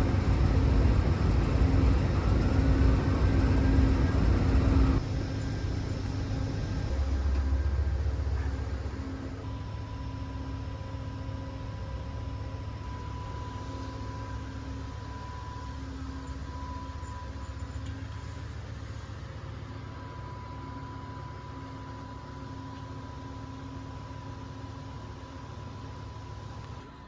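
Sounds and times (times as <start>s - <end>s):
low hum: 0.0s - 19.0s
train interior rumble: 0.0s - 20.4s
steady high whine: 0.0s - 27.0s.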